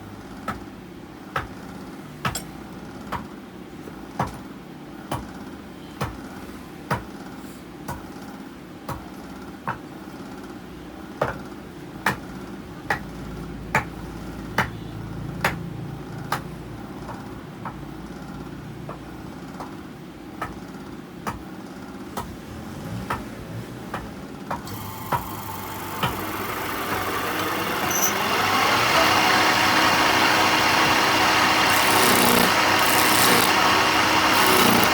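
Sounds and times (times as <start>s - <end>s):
steady machine hum: 24.6s - 34.9s
loud rushing machine noise: 24.7s - 34.9s.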